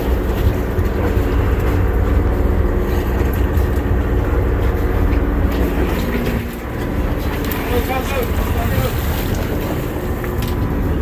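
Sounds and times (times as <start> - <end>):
boat engine humming: 0.0 - 11.0.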